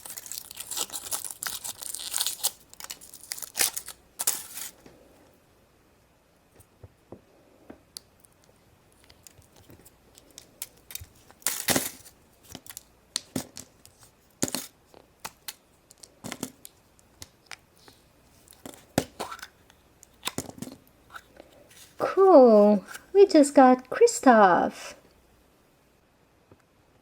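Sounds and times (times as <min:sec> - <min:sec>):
foil wrapper crinkling and tearing: 0:00.0 - 0:04.8, 0:09.0 - 0:20.5.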